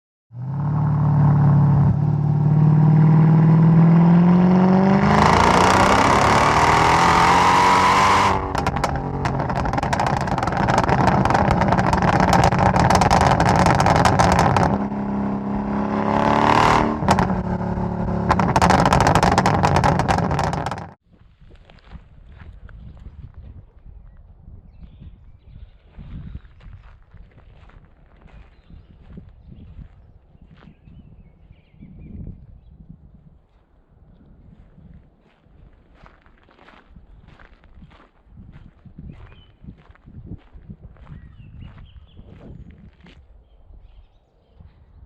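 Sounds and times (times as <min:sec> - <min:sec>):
car engine revving hard: 0:00.4 - 0:21.0
exhaust crackles and pops: 0:00.4 - 0:21.0.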